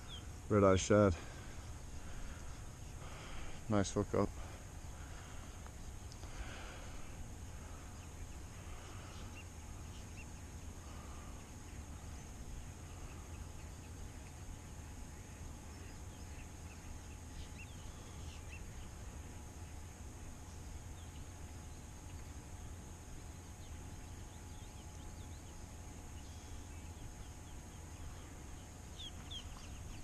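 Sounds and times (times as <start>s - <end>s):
bird chirps: 0.0s - 0.3s, 7.9s - 19.0s, 23.3s - 30.0s
high insect drone: 0.0s - 30.0s.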